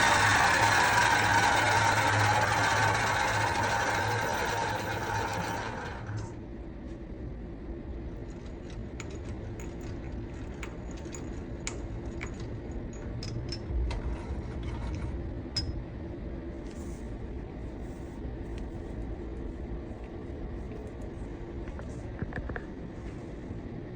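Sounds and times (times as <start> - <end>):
lathe motor whirring: 0.0 - 6.4
low steady hum: 0.0 - 23.9.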